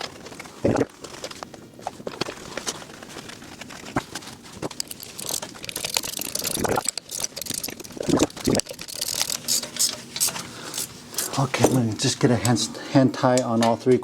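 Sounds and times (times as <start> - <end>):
ratchet wrench clicking: 4.8 - 11.8.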